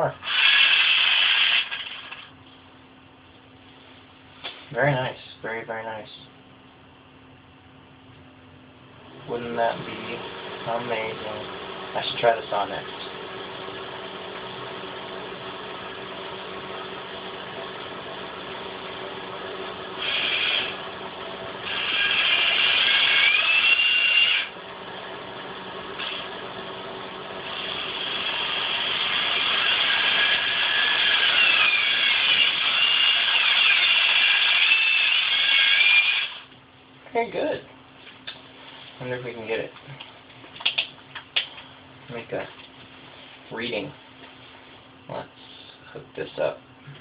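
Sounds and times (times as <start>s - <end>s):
power tool motor running: 0.2s - 2.3s, 20.0s - 20.8s, 21.6s - 24.6s, 26.0s - 26.4s, 27.4s - 36.5s
squealing whine: 9.2s - 36.5s.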